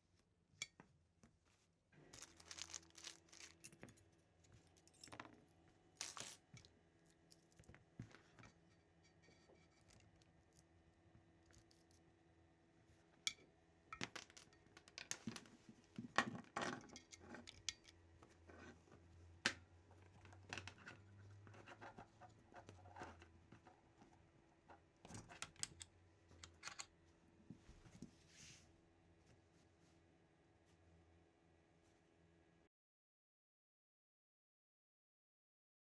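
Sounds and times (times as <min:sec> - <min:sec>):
handling small hard objects: 0:02.1 - 0:04.0, 0:06.0 - 0:06.6.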